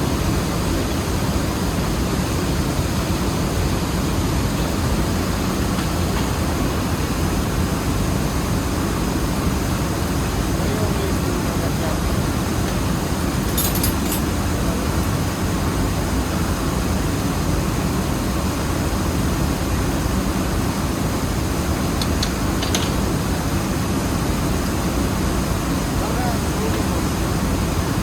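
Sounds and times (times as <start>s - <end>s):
mill machinery low drone: 0.0s - 28.0s
metallic clinks: 13.4s - 14.3s.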